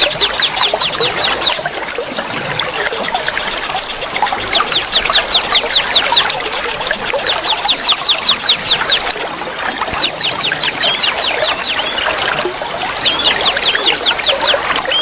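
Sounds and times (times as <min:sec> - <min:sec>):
birds chattering: 0:00.0 - 0:01.7, 0:02.4 - 0:09.2, 0:09.9 - 0:15.0
rapid down-slurred whistled notes: 0:10.0 - 0:12.1, 0:13.0 - 0:15.0.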